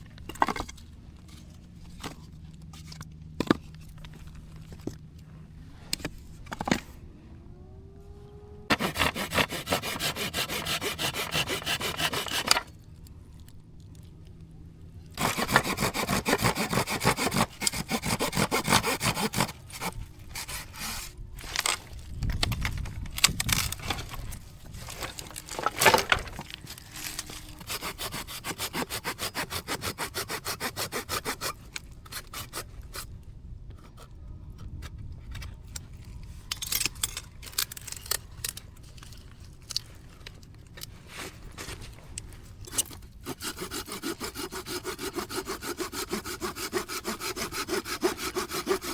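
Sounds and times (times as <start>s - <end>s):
hand saw cutting wood: 8.7s - 12.8s, 15.2s - 22.0s, 23.2s - 33.2s, 41.0s - 48.9s.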